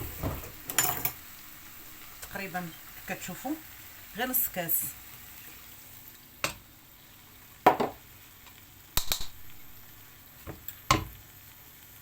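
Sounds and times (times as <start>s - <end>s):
utensils and dishes clattering: 0.0s - 1.2s.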